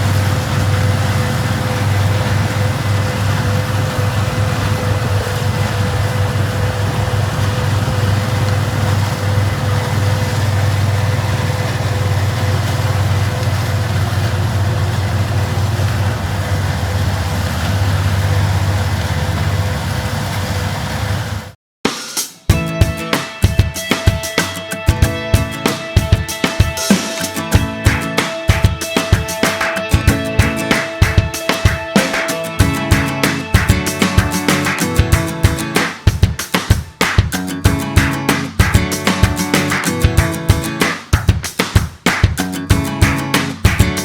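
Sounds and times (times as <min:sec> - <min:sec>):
machinery engine droning: 0:00.0 - 0:21.5.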